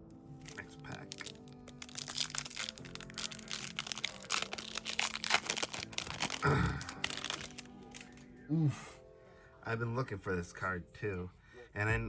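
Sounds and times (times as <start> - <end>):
foil wrapper tearing and crinkling: 0.5 - 8.2
person grunting: 6.4 - 7.0.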